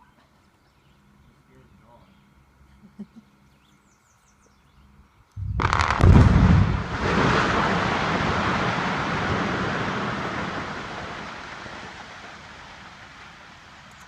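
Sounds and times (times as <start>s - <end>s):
blast boom with sharp cracks: 5.4s - 13.0s
rolling rumble: 5.4s - 13.9s.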